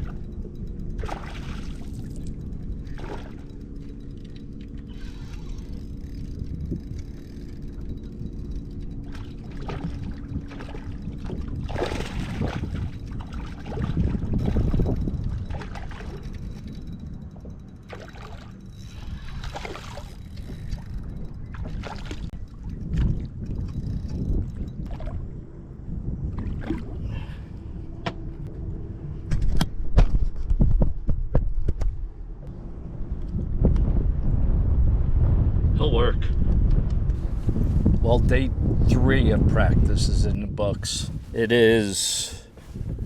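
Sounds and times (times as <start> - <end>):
steady hum: 0.0 - 22.8
water sloshing against boat hull: 0.0 - 25.4, 26.2 - 27.0
low rumble: 0.0 - 43.0.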